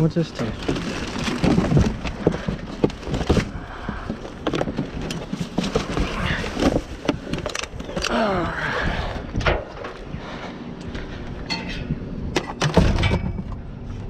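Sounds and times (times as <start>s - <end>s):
junk knocking and clattering: 0.4s - 8.1s, 11.4s - 13.7s.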